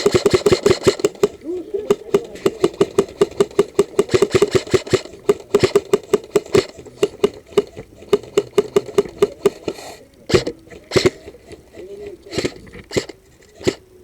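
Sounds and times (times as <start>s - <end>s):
airsoft gun rapid fire: 0.0s - 14.0s.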